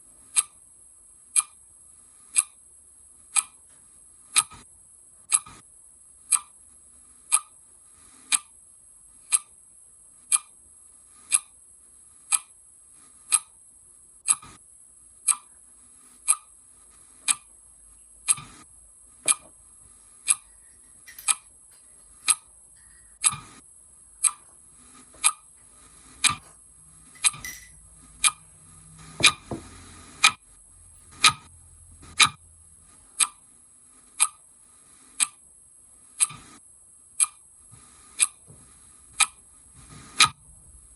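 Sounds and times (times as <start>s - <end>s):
clock ticking: 0.3s - 0.6s, 1.3s - 1.6s, 2.2s - 2.6s, 3.3s - 3.7s, 4.3s - 4.7s, 5.3s - 5.6s, 6.3s - 6.6s, 7.2s - 8.6s, 9.3s - 9.6s, 10.3s - 10.6s, 11.2s - 11.6s, 12.3s - 12.6s, 13.2s - 13.6s, 14.2s - 14.6s, 15.2s - 15.6s, 16.2s - 16.6s, 17.2s - 17.6s, 18.2s - 19.6s, 20.2s - 23.6s, 24.2s - 32.4s, 33.2s - 33.5s, 34.1s - 34.5s, 35.2s - 35.5s, 36.2s - 36.6s, 37.2s - 40.4s
faint knocks: 29.2s - 29.7s.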